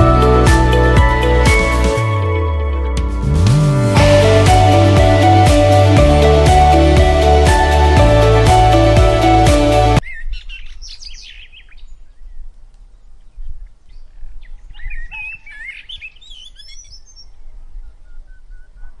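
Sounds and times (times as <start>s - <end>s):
low rumble: 2.6s - 9.4s
small birds chirping: 10.0s - 19.0s.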